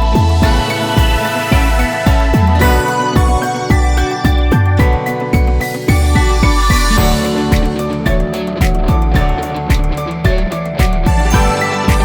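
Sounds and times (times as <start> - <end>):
deep kick drum beat: 0.0 - 12.0.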